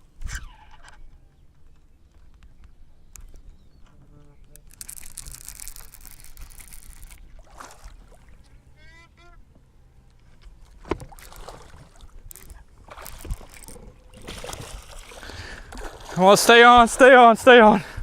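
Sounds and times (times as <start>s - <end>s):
rustling handling noise: 4.6s - 8.0s, 10.2s - 15.0s
bird honking calls: 8.3s - 9.9s.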